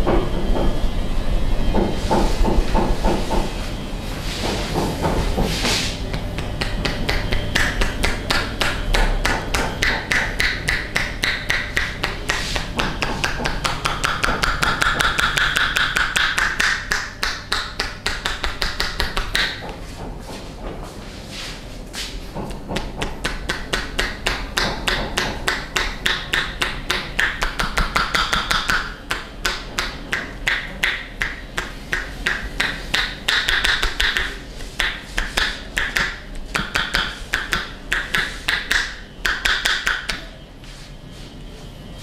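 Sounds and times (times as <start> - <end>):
massage slaps on body: 5.1 - 19.8, 22.4 - 40.2.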